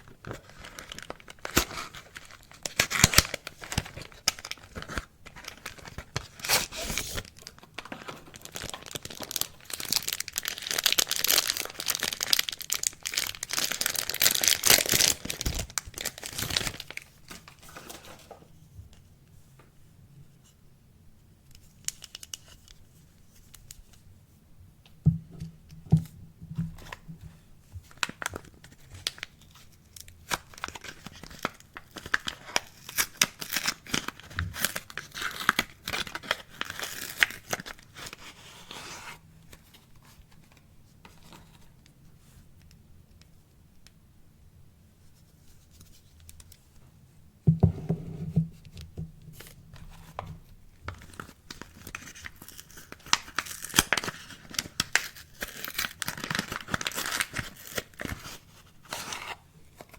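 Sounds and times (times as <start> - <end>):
wrapper tearing and crinkling: 0.2 - 18.0, 27.9 - 38.8, 50.9 - 59.9.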